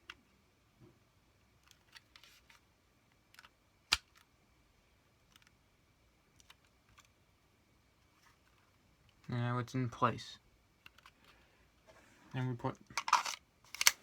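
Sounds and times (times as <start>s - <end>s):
plastic parts clicking into place: 3.3s - 4.3s, 10.8s - 11.4s, 12.8s - 14.0s.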